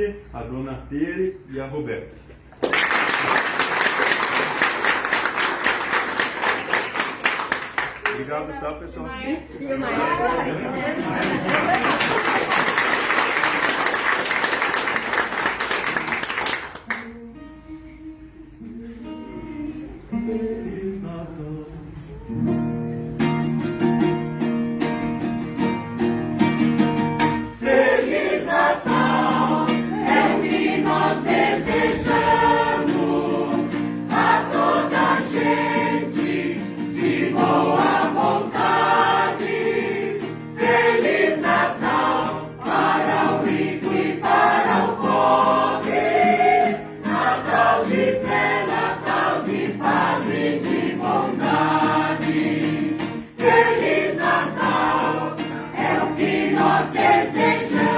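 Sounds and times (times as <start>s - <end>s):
acoustic guitar: 2.1s - 57.9s
mixed choir singing: 9.7s - 13.8s, 27.4s - 57.9s.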